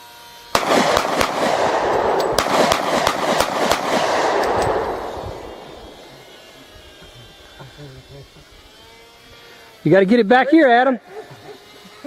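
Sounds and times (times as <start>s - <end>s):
pistol shots: 0.5s - 6.5s
loud rushing noise: 0.6s - 7.0s.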